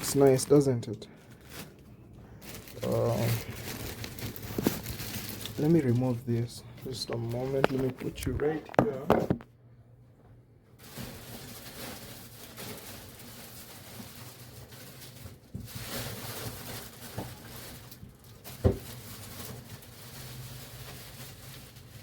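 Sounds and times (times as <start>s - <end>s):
quiet handling noises: 0.0s - 9.5s.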